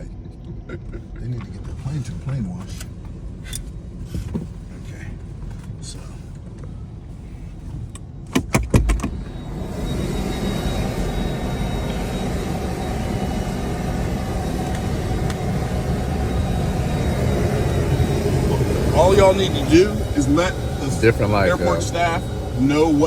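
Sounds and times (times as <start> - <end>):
faint high whine: 8.8 - 23.0.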